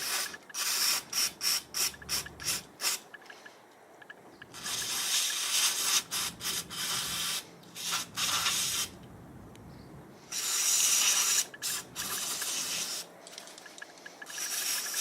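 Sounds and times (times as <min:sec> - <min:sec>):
aerosol can spraying: 0:00.0 - 0:03.0, 0:04.5 - 0:09.0, 0:10.3 - 0:13.1, 0:14.3 - 0:15.0.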